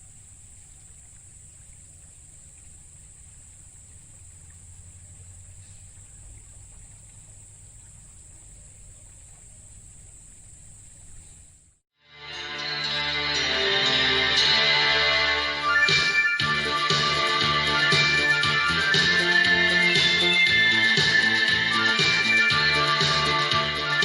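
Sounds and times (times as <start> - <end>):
insects droning: 0.0 - 11.8
low rumble: 0.0 - 11.8.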